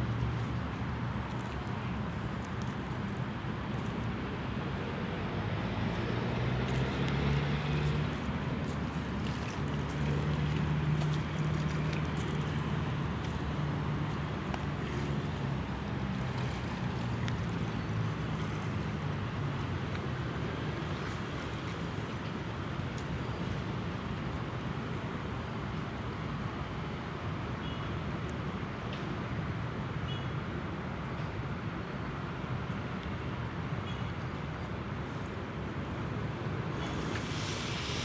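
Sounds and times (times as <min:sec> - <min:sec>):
motor engine hum: 0:06.8 - 0:22.7
steady rushing noise: 0:36.0 - 0:38.0.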